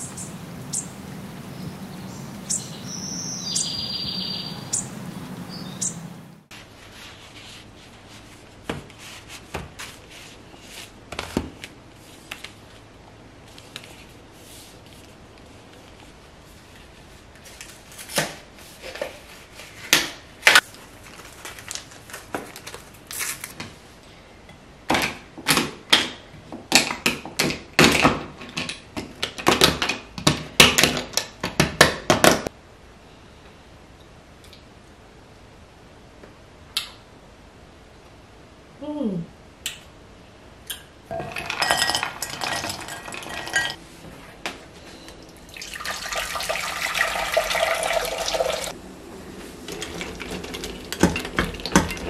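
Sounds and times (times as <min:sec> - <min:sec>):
kitchen utensils clicking and knocking: 0:41.1 - 0:43.8, 0:49.7 - 0:52.0.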